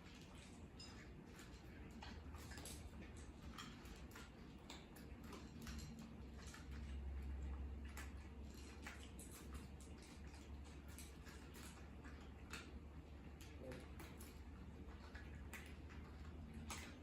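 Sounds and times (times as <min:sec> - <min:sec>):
cats chewing and crunching food: 0:00.0 - 0:17.0
low steady hum: 0:00.0 - 0:17.0.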